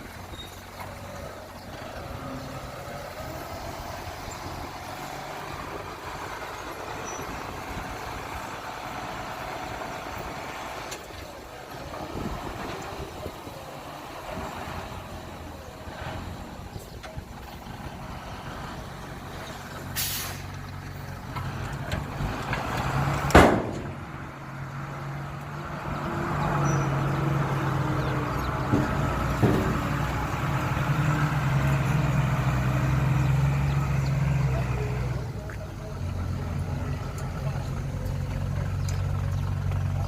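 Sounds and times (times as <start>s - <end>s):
truck diesel engine droning: 0.0s - 40.0s
air brake blast: 20.0s - 20.5s
air brake hiss: 20.0s - 20.5s.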